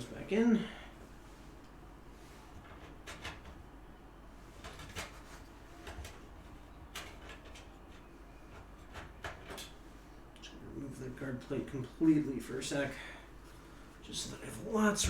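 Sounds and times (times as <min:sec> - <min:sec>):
computer parts clicking and knocking: 0:02.6 - 0:03.6, 0:04.6 - 0:06.2, 0:06.9 - 0:09.8.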